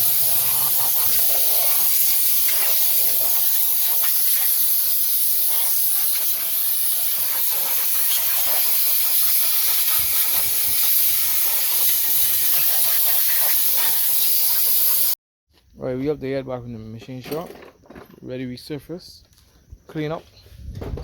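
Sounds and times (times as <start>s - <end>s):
high-pitched hiss of pressurised jet: 0.0s - 15.2s.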